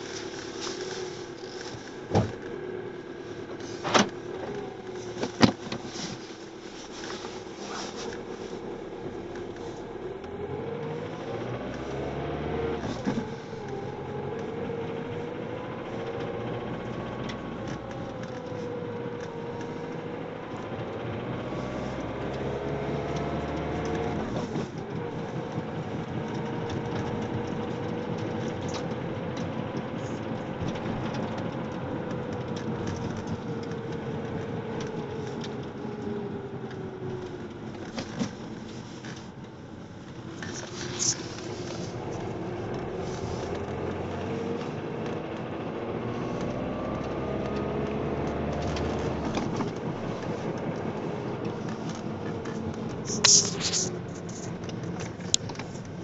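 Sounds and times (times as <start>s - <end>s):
diesel engine rattling: 0.0s - 56.0s.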